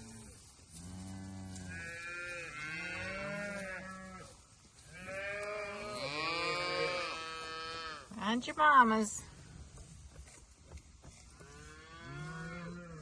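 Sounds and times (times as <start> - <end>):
cattle mooing: 0.9 - 4.2, 5.0 - 8.0, 11.5 - 13.0.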